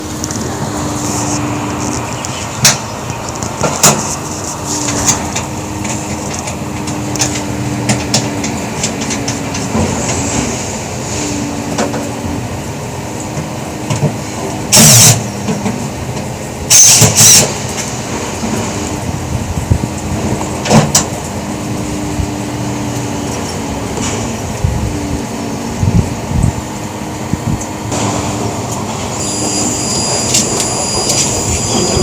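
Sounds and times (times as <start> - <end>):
electric drill bursts: 14.8 - 15.2, 29.2 - 32.0.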